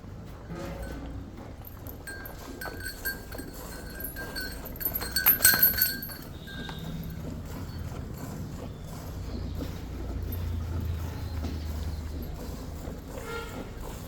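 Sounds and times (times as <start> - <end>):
cow bell clinking: 0.8 - 8.4.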